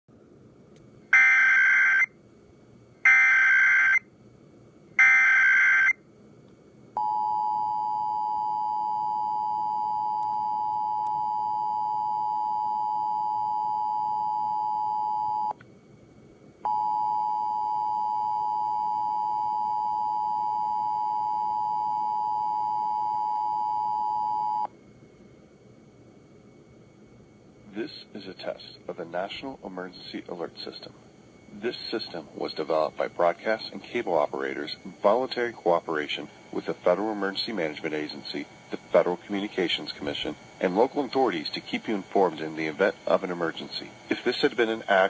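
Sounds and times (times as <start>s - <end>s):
loud data bursts: 1.1s - 2.1s, 3.0s - 4.0s, 5.0s - 6.0s.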